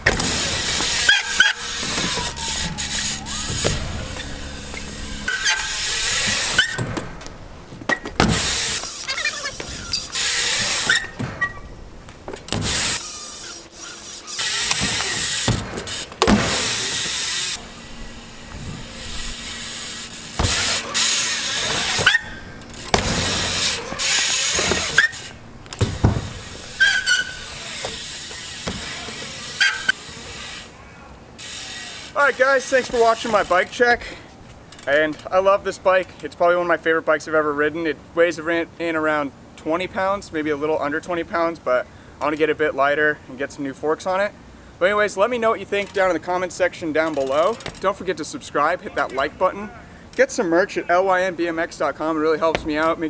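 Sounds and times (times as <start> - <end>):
bike landing knocks: 0.0 - 13.0, 14.4 - 30.0, 47.0 - 48.0, 52.0 - 53.0
bike tyres hissing on concrete: 0.0 - 34.6.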